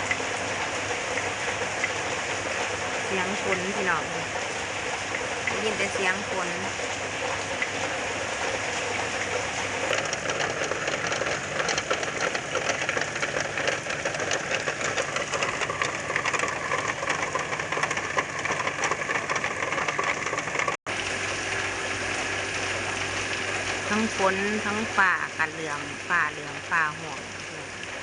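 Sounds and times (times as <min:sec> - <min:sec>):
heavy rain pouring: 0:00.0 - 0:28.0.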